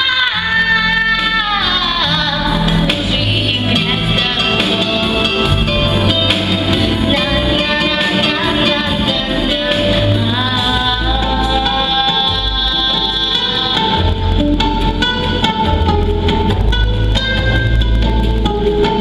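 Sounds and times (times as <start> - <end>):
girl singing: 0.0 - 5.7, 6.9 - 14.2
pop backing track with guitar and drums: 0.0 - 19.0.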